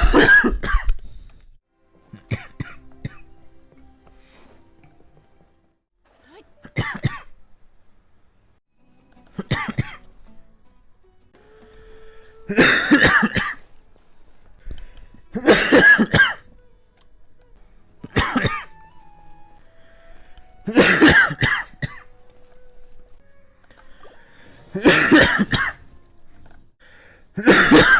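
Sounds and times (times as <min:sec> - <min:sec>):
harsh coughing: 0:00.0 - 0:01.0, 0:02.1 - 0:03.2, 0:06.6 - 0:07.3, 0:09.4 - 0:10.0, 0:12.5 - 0:13.6, 0:15.3 - 0:16.4, 0:18.0 - 0:18.7, 0:20.7 - 0:22.1, 0:24.7 - 0:25.8, 0:27.4 - 0:27.9.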